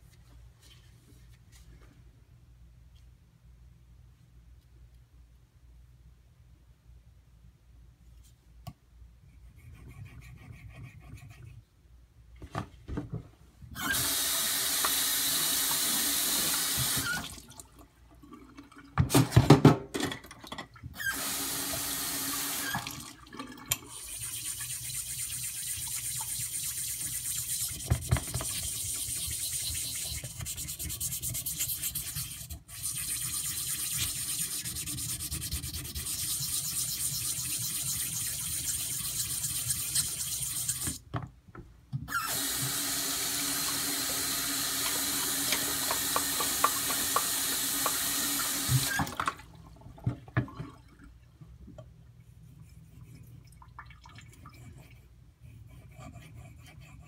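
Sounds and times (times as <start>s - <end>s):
tap water running: 13.8s - 19.5s, 20.9s - 27.1s, 42.1s - 51.1s.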